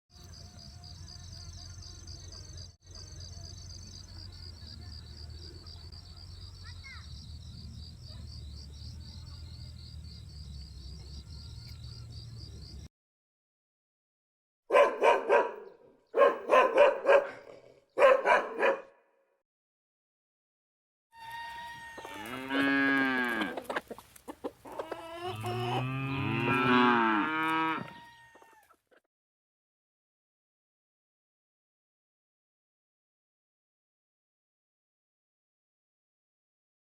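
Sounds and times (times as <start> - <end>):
insects chirping in pulses: 0.3 - 12.9
cow mooing: 22.0 - 23.6, 25.2 - 28.2.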